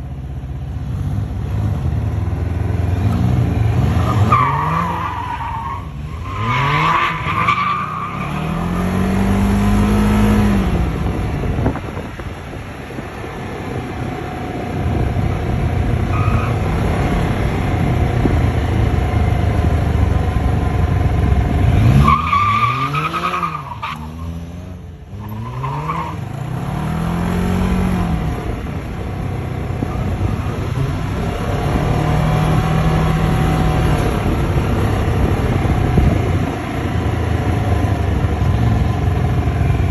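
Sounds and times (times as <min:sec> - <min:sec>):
road and wind noise: 0:00.0 - 0:39.9
motorcycle engine accelerating: 0:26.3 - 0:39.9.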